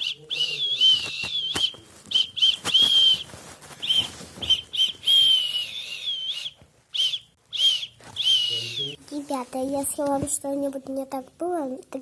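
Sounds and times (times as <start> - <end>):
person whistling: 3.8 - 9.0.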